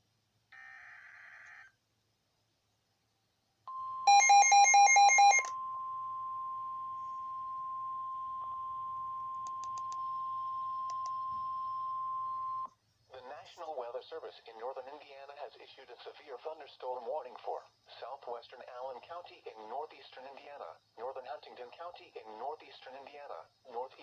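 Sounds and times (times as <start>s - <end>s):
steady warning alarm tone: 3.7s - 12.7s.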